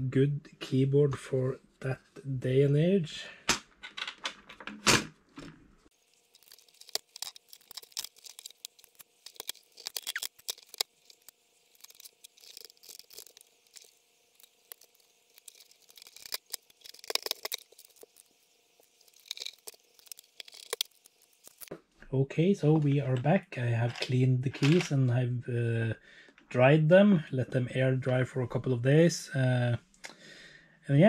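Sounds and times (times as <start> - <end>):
faint steady hums: 5.3 - 31.0
small objects clicking and rustling: 5.4 - 21.7, 23.9 - 24.9.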